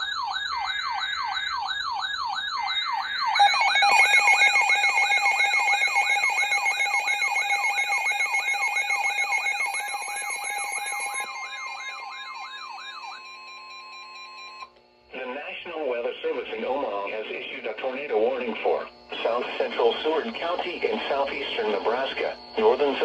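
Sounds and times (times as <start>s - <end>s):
electronic siren warbling: 0.0s - 14.7s.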